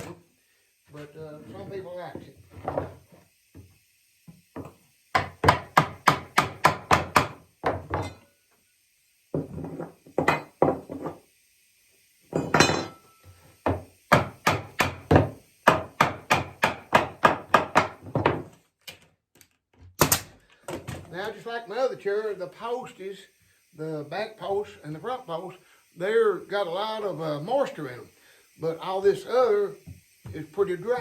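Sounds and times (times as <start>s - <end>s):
hammer striking wood: 4.6s - 8.0s, 13.7s - 18.5s.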